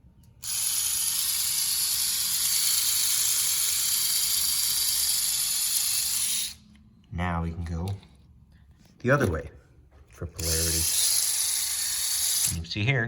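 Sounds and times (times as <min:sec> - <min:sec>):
small electric motor whirring: 0:00.4 - 0:06.7, 0:10.4 - 0:12.6.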